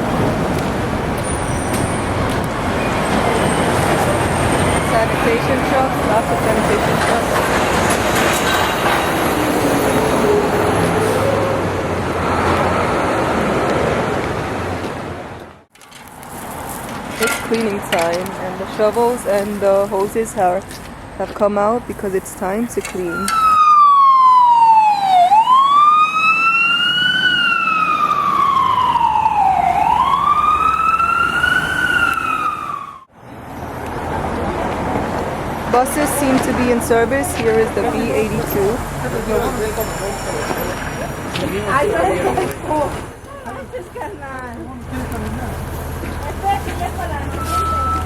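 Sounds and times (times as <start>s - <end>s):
diesel truck engines rumbling: 0.0s - 48.0s
road noise: 0.0s - 48.0s
siren wailing: 23.1s - 33.1s.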